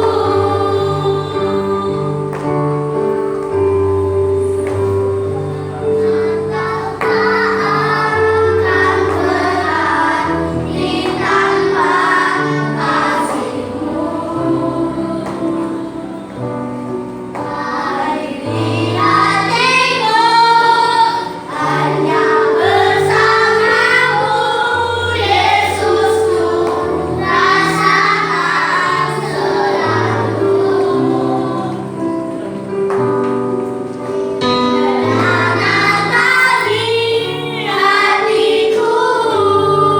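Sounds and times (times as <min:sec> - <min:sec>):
children singing a hymn: 0:00.0 - 0:39.9.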